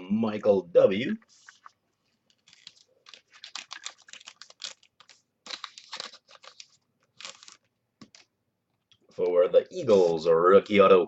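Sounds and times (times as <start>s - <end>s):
cards and wrappers crinkling: 1.3s - 8.3s.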